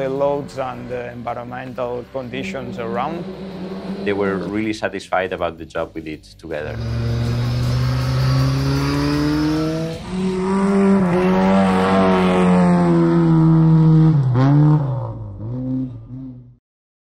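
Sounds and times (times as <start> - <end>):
racing car engine at high revs: 0.7 - 4.6, 6.7 - 16.3.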